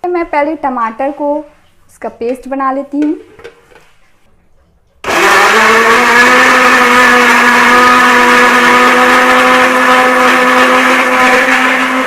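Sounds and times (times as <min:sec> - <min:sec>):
electric blender running: 0:05.0 - 0:12.0.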